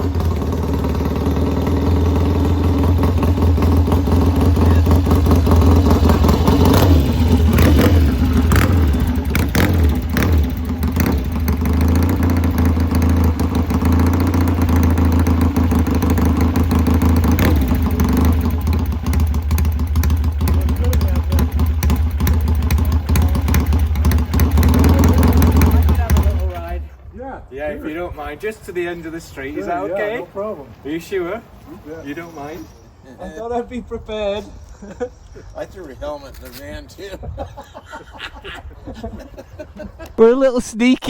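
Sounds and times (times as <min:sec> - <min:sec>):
motorcycle engine idling and revving: 0:00.0 - 0:27.1.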